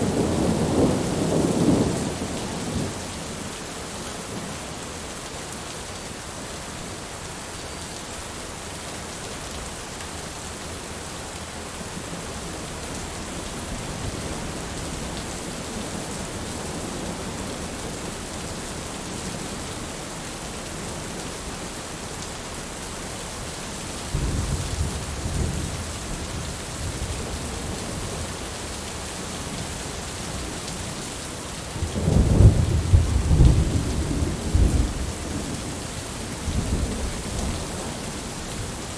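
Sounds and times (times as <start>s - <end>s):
steady rain falling: 0.0s - 38.9s
thunder rumbling: 31.8s - 35.7s.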